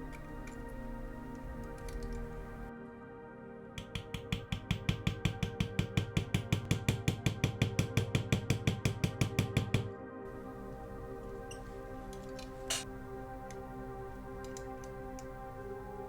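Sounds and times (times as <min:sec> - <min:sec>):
rapid mechanical clicking: 0:00.0 - 0:02.7, 0:10.3 - 0:16.0
background music: 0:00.0 - 0:16.0.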